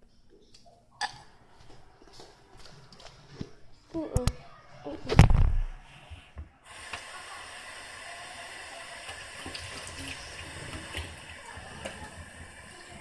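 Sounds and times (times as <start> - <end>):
water running from a tap: 6.7 - 13.0.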